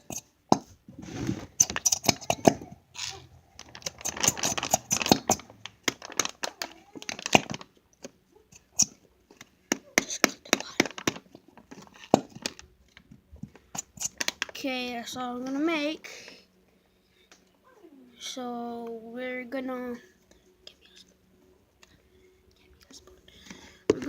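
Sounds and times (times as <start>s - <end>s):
plastic crinkling: 1.0s - 7.8s, 10.0s - 14.6s.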